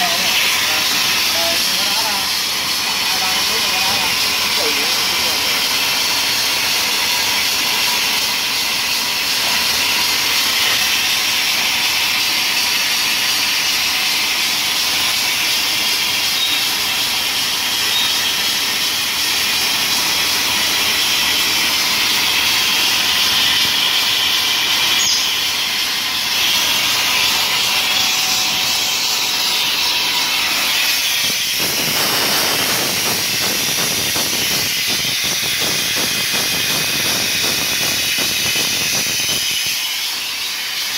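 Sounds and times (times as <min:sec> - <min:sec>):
compressed air hissing: 0:25.1 - 0:40.9.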